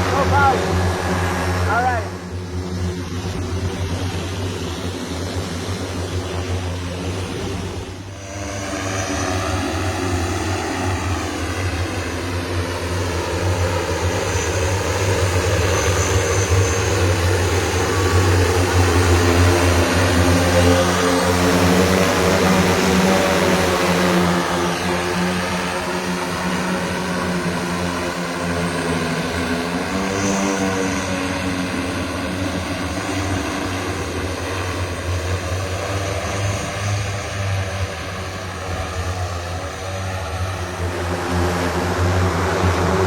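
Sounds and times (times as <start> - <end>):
multicopter propellers droning: 0.0 - 10.9, 21.2 - 24.5.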